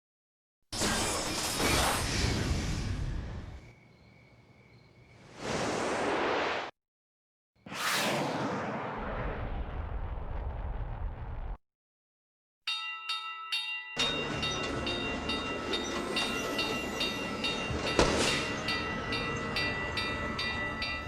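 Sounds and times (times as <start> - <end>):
sharp swish: 7.7 - 9.0
bell ringing rapidly: 12.7 - 21.0
train running: 14.0 - 21.0.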